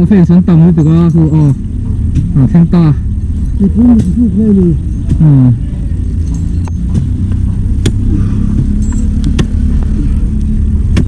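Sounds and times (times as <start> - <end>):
large engine rumbling: 0.0 - 11.0
sharp knocks: 6.8 - 9.6.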